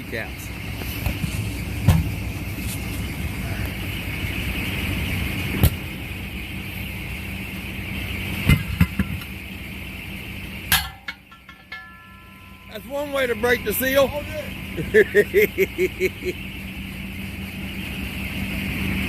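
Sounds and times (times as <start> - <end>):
engine idling hum: 0.0 - 19.0
sharp knocks from tire work: 0.8 - 2.8, 5.5 - 5.8, 8.4 - 9.4, 10.7 - 12.3.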